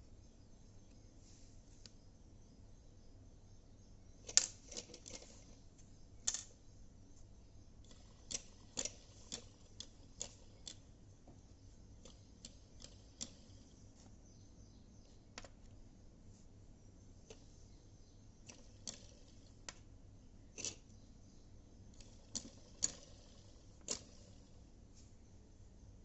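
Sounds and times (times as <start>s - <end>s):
small hard parts clicking: 4.2s - 5.6s, 6.2s - 6.6s, 7.8s - 10.9s, 12.0s - 13.7s, 18.4s - 19.8s, 20.6s - 20.9s, 21.9s - 24.5s.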